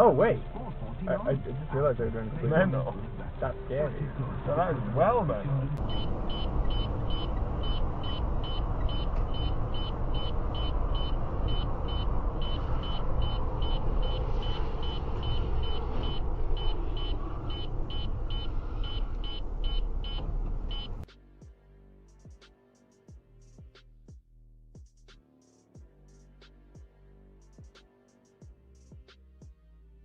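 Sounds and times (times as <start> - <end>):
vehicle engine rumbling: 0.0 - 21.1.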